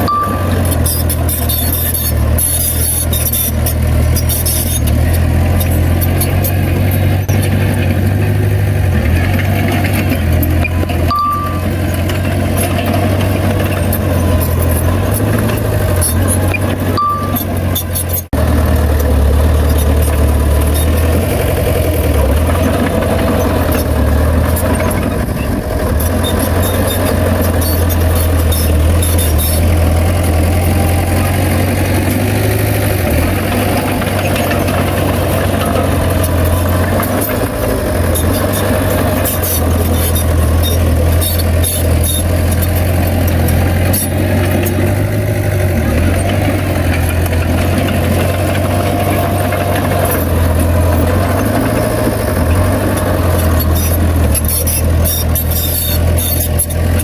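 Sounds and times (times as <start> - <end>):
short high beeps: 0.0 - 3.5, 10.6 - 11.8, 16.5 - 18.2
heavy diesel engine droning: 0.0 - 57.0.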